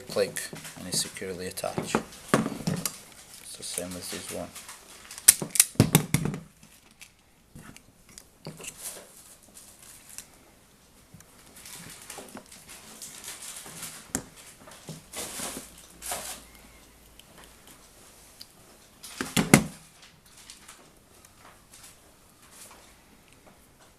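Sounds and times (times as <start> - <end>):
light rustles and scrapes: 8.5 - 10.4, 11.4 - 18.4.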